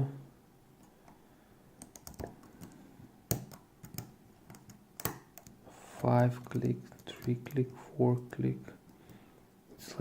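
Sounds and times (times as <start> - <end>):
lock pins clicking: 1.8 - 5.5.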